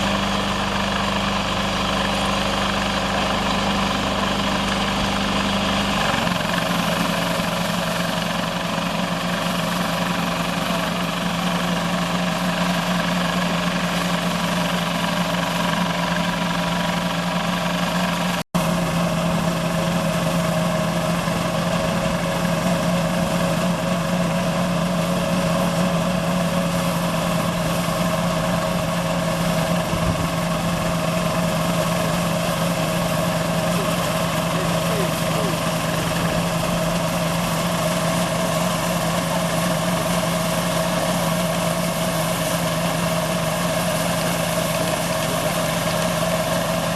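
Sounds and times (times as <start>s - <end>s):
combine harvester engine running: 0.0s - 46.9s.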